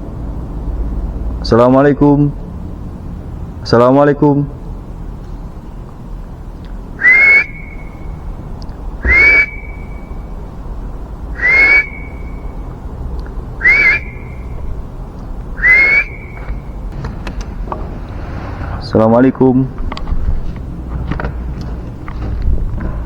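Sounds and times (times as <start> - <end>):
rising whistled calls: 7.0 - 10.4, 11.3 - 12.8, 13.5 - 14.7, 15.5 - 16.8.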